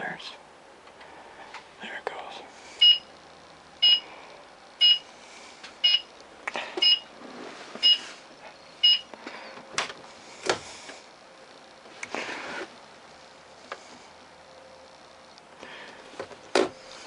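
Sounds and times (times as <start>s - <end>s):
turn-signal beeping with click: 6.8s - 7.0s, 8.8s - 9.1s.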